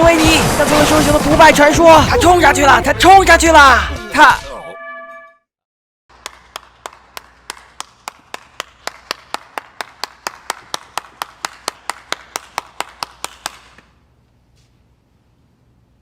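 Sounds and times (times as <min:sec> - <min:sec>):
hands clapping slowly: 0:06.1 - 0:14.0.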